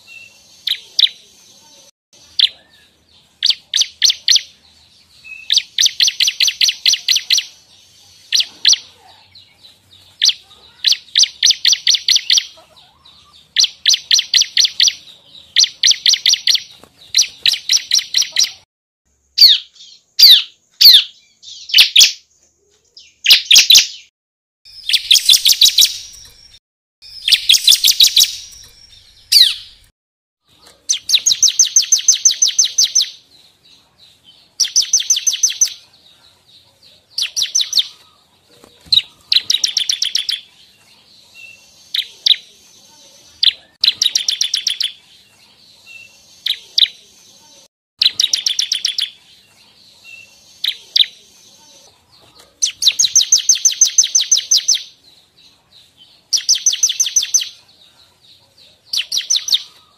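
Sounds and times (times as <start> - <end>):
harsh buzzy bird phrases: 10.2 - 18.7.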